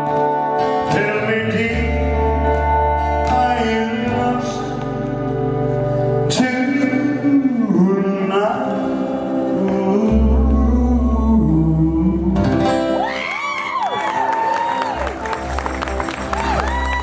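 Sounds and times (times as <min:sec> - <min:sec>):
band with acoustic guitars: 0:00.0 - 0:17.0
man singing a slow ballad: 0:00.7 - 0:13.0
audience whooping and cheering: 0:12.9 - 0:17.0.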